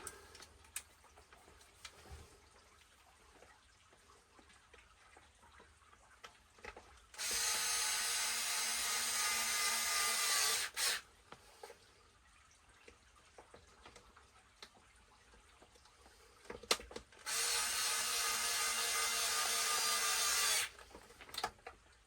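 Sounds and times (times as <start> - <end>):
power drill driving screw: 7.2 - 11.0, 17.3 - 20.8.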